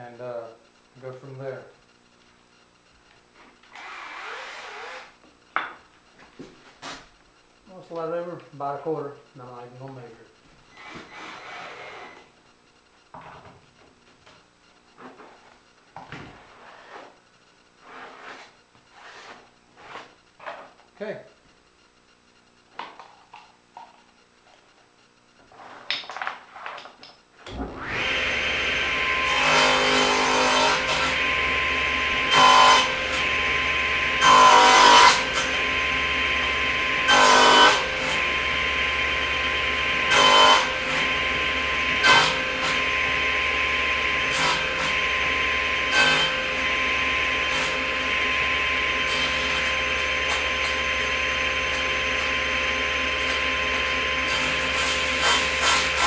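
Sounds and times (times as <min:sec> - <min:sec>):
table saw running: 0:03.7 - 0:05.1, 0:27.5 - 0:56.0
saw blade cutting wood: 0:03.8 - 0:05.2, 0:27.9 - 0:52.3, 0:53.2 - 0:56.0.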